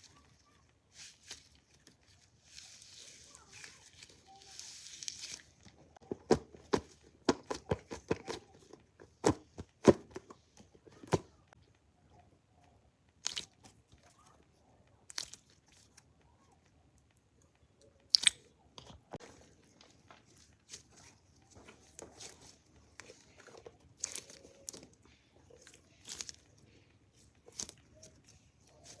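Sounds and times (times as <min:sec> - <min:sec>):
crisp crunches and crackles: 0:00.0 - 0:06.0, 0:13.1 - 0:16.5, 0:18.0 - 0:29.0.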